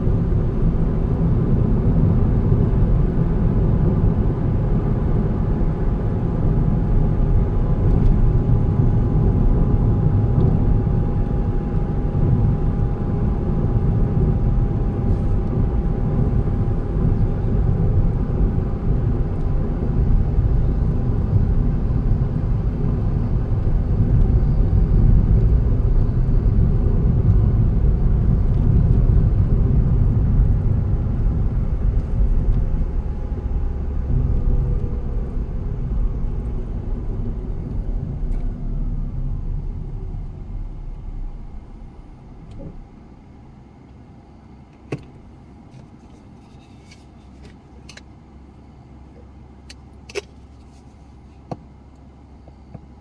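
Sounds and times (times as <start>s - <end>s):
car engine and tyre rumble: 0.0s - 53.0s
faint falling whine: 20.6s - 44.7s.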